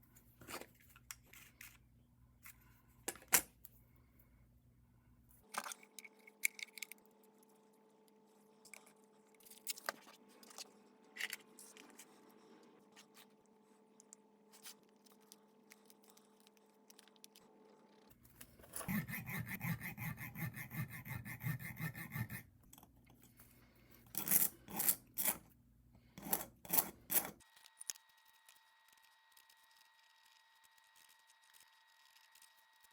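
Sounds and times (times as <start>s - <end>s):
hand tool rasping: 18.7s - 22.5s, 24.1s - 25.4s, 26.2s - 27.4s.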